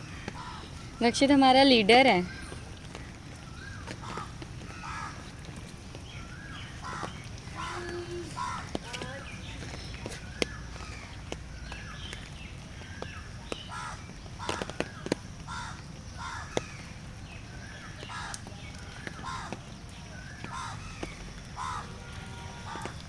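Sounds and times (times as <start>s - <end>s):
birds cawing: 0.0s - 5.5s, 6.1s - 12.0s, 12.8s - 16.9s, 17.6s - 18.4s, 19.0s - 19.6s, 20.3s - 23.0s.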